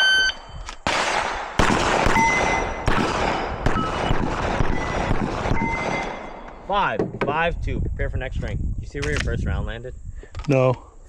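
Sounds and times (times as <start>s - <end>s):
pistol shots: 0.8s - 6.7s.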